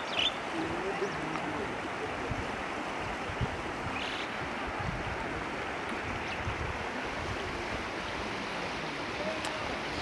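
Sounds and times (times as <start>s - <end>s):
floodwater rushing: 0.0s - 10.0s
wind buffeting microphone: 0.0s - 10.0s.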